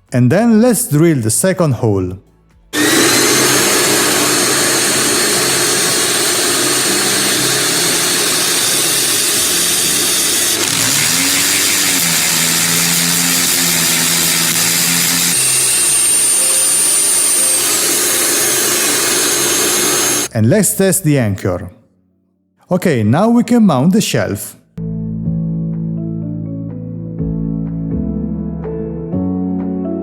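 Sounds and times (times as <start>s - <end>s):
electric drill whirring: 2.8s - 20.3s
vacuum cleaner running: 2.8s - 20.3s.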